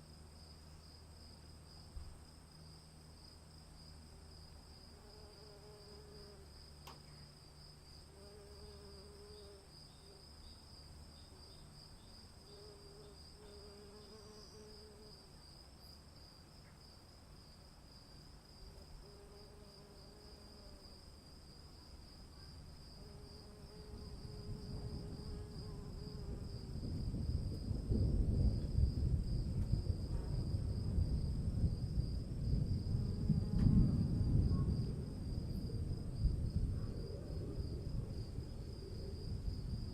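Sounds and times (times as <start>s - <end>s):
crickets trilling: 0.0s - 39.9s
thunder rumbling: 26.2s - 39.9s.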